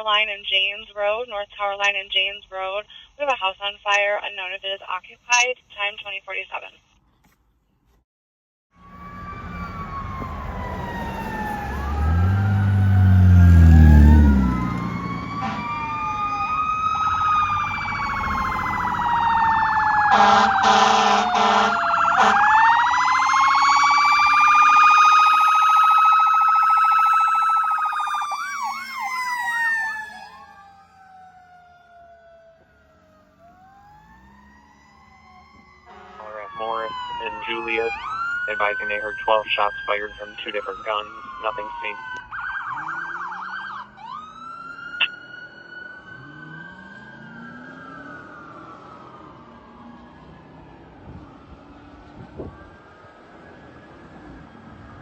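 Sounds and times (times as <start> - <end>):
siren fast yelp: 8.8 - 48.9
deep low siren tone: 8.8 - 55.0
fire truck sirens wailing: 8.8 - 55.0
truck air horn blast: 20.1 - 22.4, 35.9 - 36.4.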